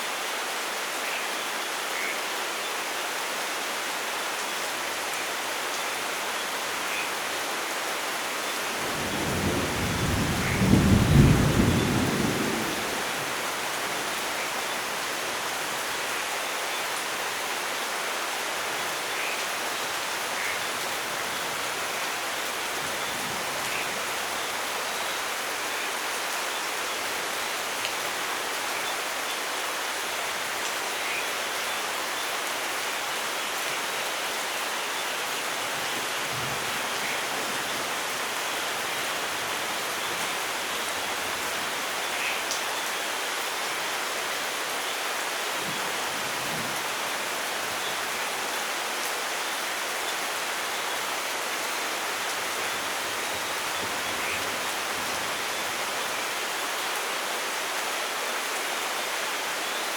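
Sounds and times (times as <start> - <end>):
heavy rain: 0.0 - 59.9
thunder rumbling: 8.9 - 13.3.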